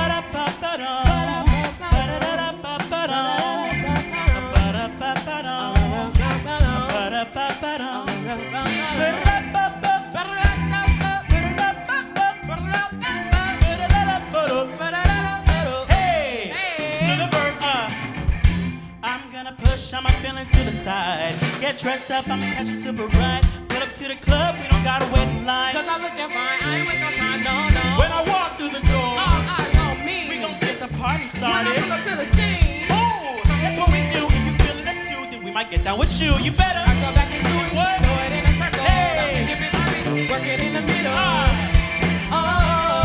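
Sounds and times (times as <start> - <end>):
drum kit and bass groove: 0.0 - 19.0, 19.6 - 35.1, 35.8 - 43.0
wavering melodic lead: 24.6 - 43.0.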